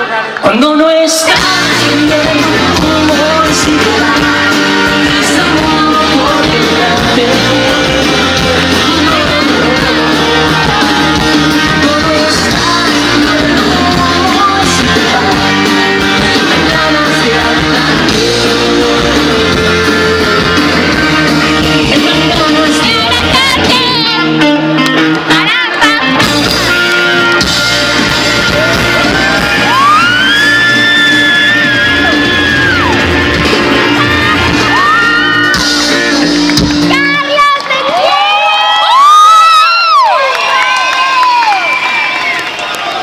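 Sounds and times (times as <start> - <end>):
pop-rock band playing: 0.0 - 38.3
person singing: 0.1 - 26.6.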